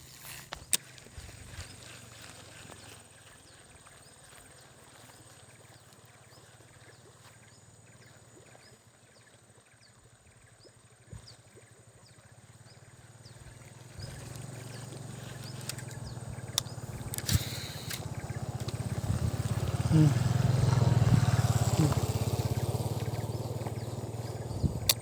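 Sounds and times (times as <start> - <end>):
low buzzing pulse: 10.4 - 25.0
high insect-like whine: 11.1 - 25.0
sharp clicks: 15.4 - 18.9.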